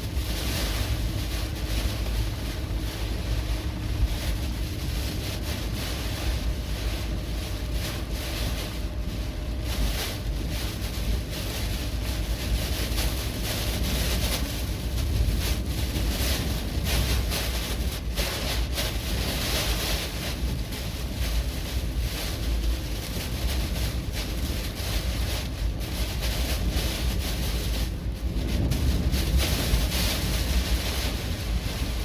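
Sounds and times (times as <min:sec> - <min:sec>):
gusty wind buffeting microphone: 0:00.0 - 0:32.0.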